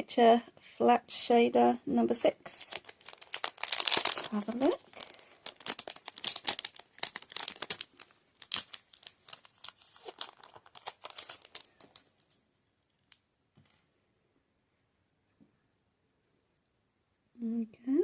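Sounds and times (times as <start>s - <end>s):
packaging crinkling: 2.5s - 12.4s.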